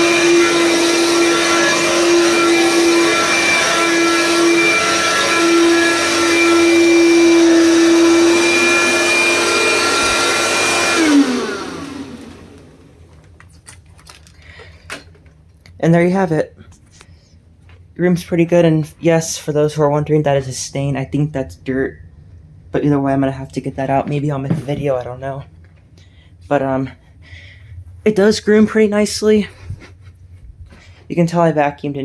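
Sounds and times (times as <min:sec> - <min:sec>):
vacuum motor winding down: 0:00.0 - 0:13.2
vacuum cleaner running: 0:00.0 - 0:13.3.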